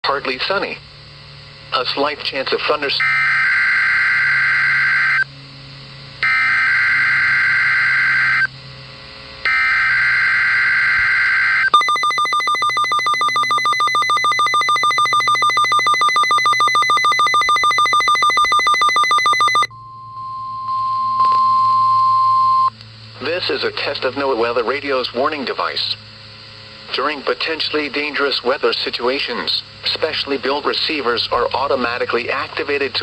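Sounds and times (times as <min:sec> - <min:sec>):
steady warning alarm tone: 0:02.9 - 0:05.3, 0:06.2 - 0:08.5, 0:09.4 - 0:22.8
rapid pulsing electronic beeps: 0:09.5 - 0:19.7
warbling data tones: 0:09.5 - 0:23.5.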